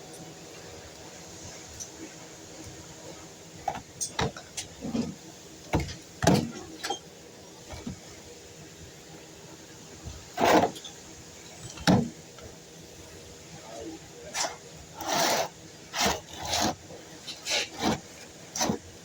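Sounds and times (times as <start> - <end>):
handling of material and tools: 14.2 - 19.0.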